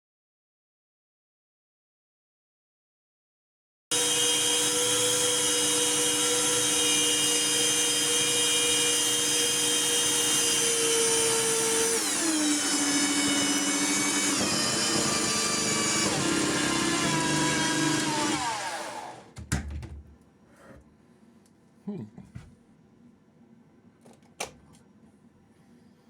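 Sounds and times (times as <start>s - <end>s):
bandsaw motor whining: 3.9s - 19.4s.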